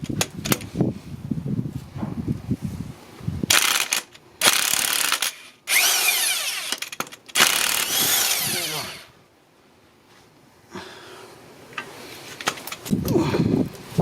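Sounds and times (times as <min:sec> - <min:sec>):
impact wrench bursts: 0:03.5 - 0:09.1.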